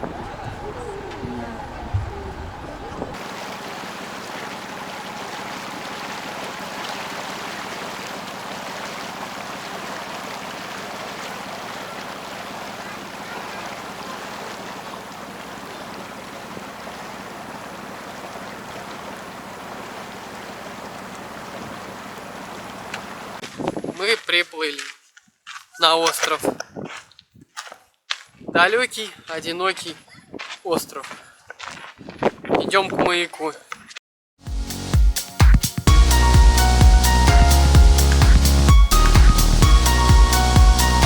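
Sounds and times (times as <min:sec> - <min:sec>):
motorboat water rushing: 0:00.0 - 0:23.4, 0:35.9 - 0:41.0.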